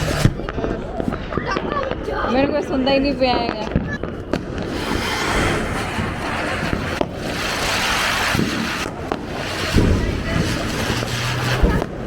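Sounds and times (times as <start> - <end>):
firework hissing sparks: 0.0 - 0.5, 4.6 - 12.0.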